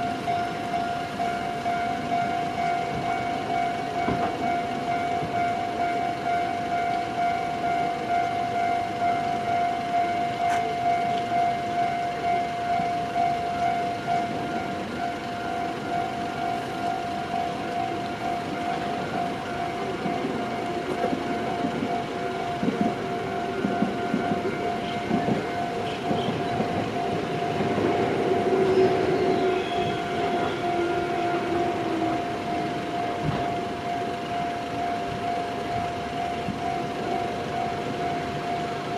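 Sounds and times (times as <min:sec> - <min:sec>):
level crossing electronic warning bell: 0:00.0 - 0:38.9.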